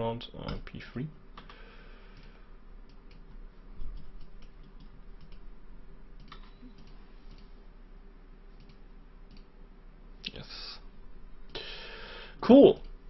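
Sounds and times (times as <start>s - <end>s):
steady low hum: 0.0s - 13.0s
computer mouse clicks: 3.9s - 5.4s, 6.2s - 7.5s, 8.6s - 9.5s.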